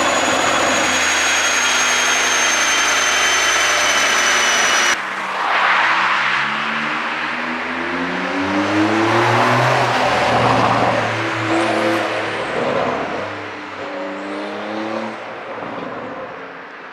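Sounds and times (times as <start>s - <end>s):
car engine accelerating: 0.0s - 16.7s.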